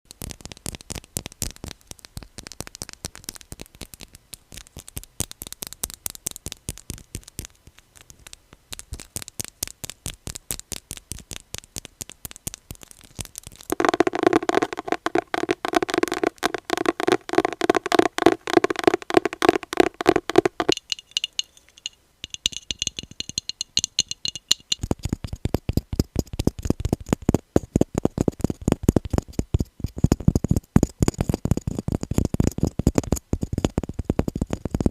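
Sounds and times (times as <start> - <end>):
fingernail tapping on objects: 13.7 - 31.4.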